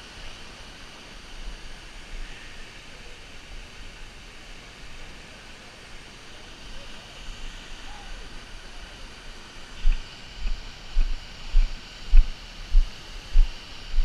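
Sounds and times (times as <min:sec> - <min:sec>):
hiss of wind or rushing water: 0:00.0 - 0:14.0
low dull thuds of footsteps: 0:09.8 - 0:14.0.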